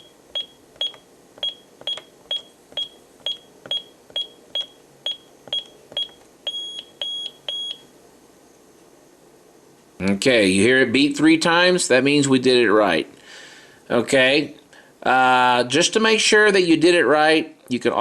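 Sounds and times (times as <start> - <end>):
alarm keypad beeping: 0.0 - 7.9.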